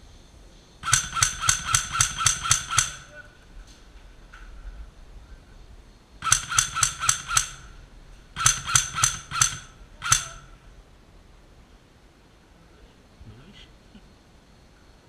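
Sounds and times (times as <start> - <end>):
airsoft gun shots cracking: 0.8 - 3.2, 6.2 - 7.8, 8.4 - 10.6.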